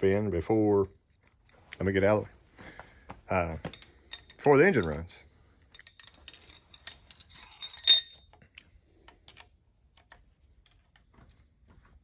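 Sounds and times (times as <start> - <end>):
light metallic clicks and clinks: 3.5 - 10.8
sharp ringing metal clink: 5.8 - 8.3.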